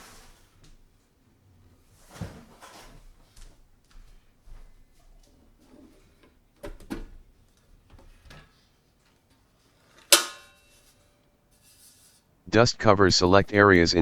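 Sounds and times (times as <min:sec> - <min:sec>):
sharp metallic clack: 0:10.0 - 0:10.8
brief metallic ring: 0:10.1 - 0:11.0.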